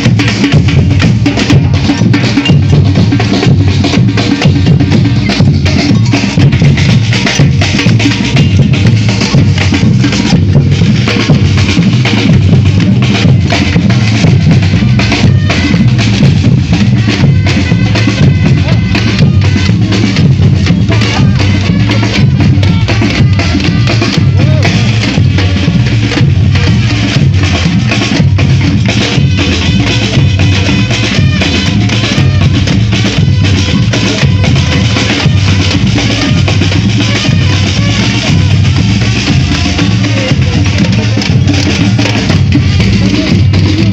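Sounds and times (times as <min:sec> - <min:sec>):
deep bass drums: 0:00.0 - 0:43.9
snare drums: 0:00.0 - 0:43.9.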